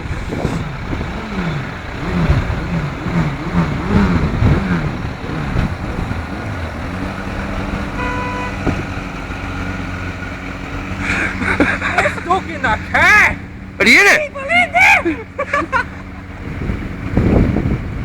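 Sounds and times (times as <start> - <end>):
car engine running: 0.0 - 18.0
short beep: 8.0 - 8.6.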